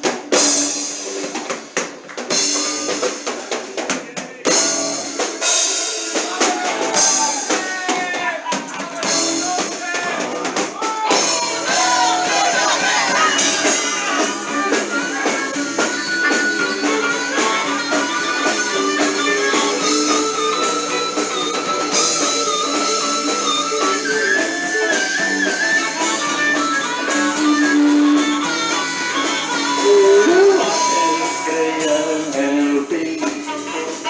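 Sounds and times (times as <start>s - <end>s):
steady drum beat: 0.0s - 34.0s
blues guitar lead: 9.0s - 34.0s.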